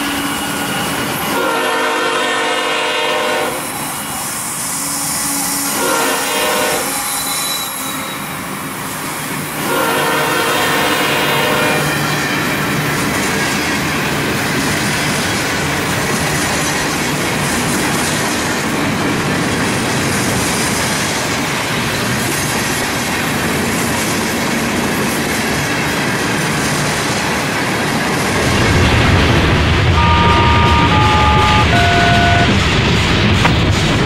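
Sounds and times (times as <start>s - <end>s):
freight train rumbling by: 0.0s - 34.0s
train horn blast: 1.3s - 3.7s, 5.0s - 7.5s, 9.6s - 11.9s, 29.9s - 32.8s
wheel squeal: 6.9s - 8.4s
wheels clickety-clack: 12.0s - 28.6s.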